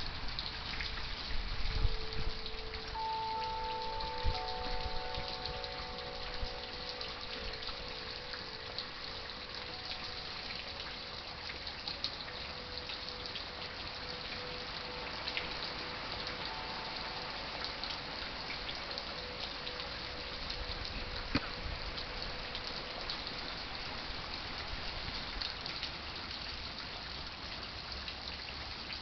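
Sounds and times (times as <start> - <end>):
steady rain: 0.0 - 29.0
ringing chimes: 1.9 - 23.3.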